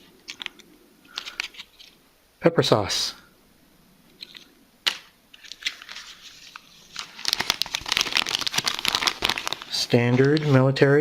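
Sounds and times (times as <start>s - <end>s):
plastic packaging crinkling: 4.2s - 10.8s.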